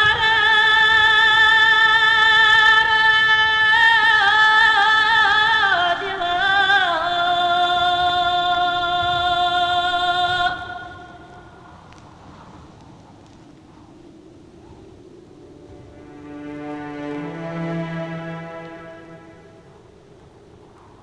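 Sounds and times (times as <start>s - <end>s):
melody with vibrato: 15.5s - 19.8s.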